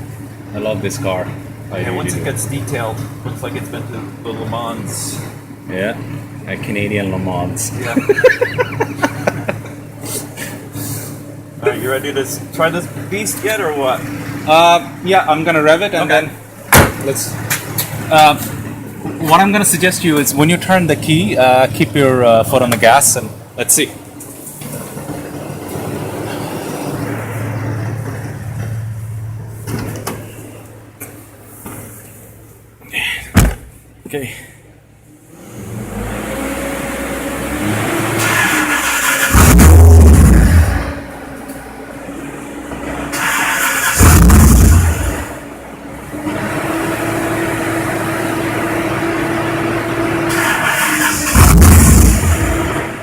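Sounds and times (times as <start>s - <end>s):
car engine starting and droning: 0.0s - 53.0s
car engine cranking and starting: 35.2s - 41.3s, 42.7s - 53.0s.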